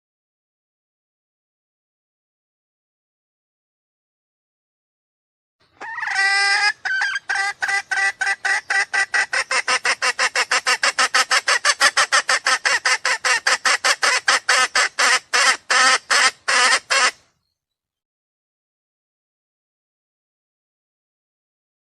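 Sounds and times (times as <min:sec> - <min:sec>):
junglefowl lure call clucking: 0:05.7 - 0:17.3.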